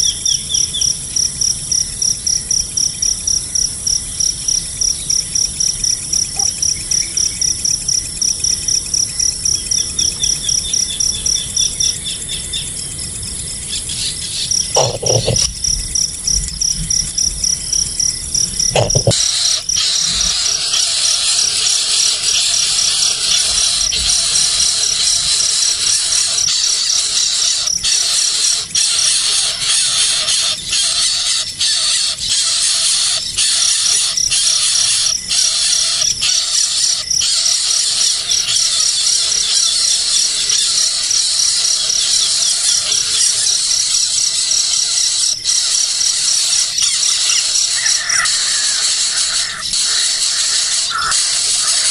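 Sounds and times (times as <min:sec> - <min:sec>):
insect chirping: 0:00.0 - 0:51.9
nestling birds squealing: 0:14.0 - 0:15.5, 0:26.2 - 0:36.4, 0:45.5 - 0:51.9.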